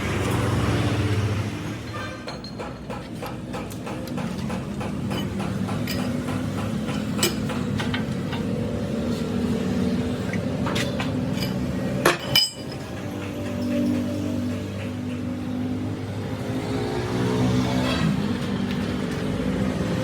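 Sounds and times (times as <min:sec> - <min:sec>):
metal knocks and clinks: 0:01.9 - 0:03.2, 0:03.9 - 0:08.6, 0:10.4 - 0:15.3.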